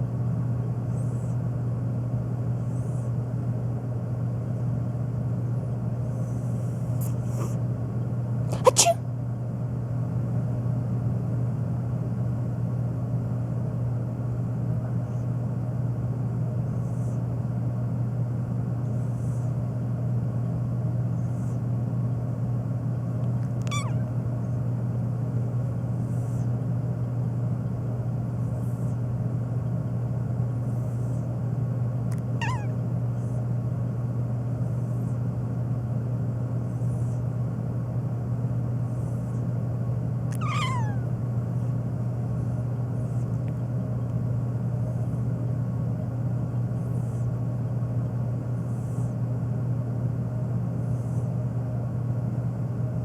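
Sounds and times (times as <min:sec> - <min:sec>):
loud steady low hum: 0:00.0 - 0:53.0
cat meowing: 0:08.5 - 0:09.0, 0:23.6 - 0:24.1, 0:32.4 - 0:32.8, 0:40.3 - 0:41.1.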